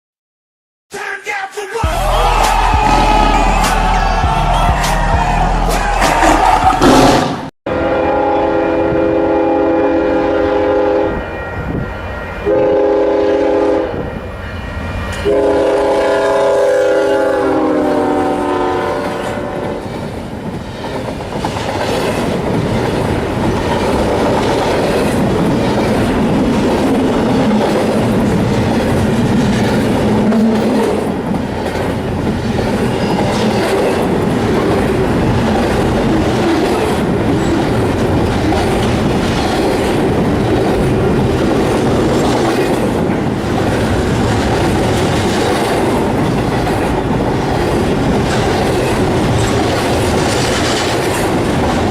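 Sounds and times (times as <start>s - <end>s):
train rumbling past: 2.0s - 51.9s
train horn: 6.8s - 14.3s, 15.2s - 19.8s.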